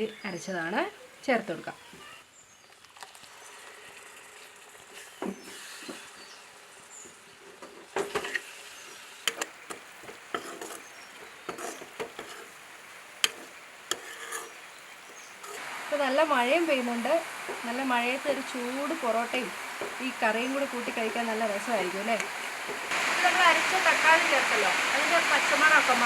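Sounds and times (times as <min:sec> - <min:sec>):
food sizzling in a pan: 0:03.0 - 0:26.0
spoon knocking against pan: 0:13.2 - 0:14.5.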